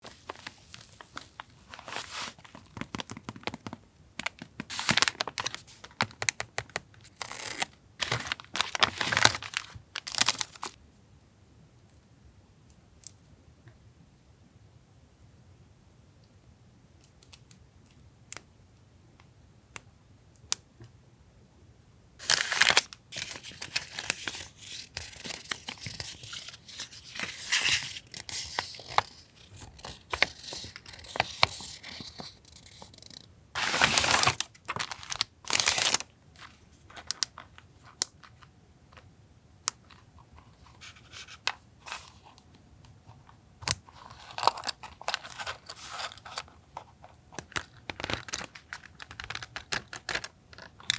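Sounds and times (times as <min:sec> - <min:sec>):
packaging crinkling and rustling: 0:00.0 - 0:10.8, 0:22.2 - 0:39.0, 0:43.2 - 0:50.9.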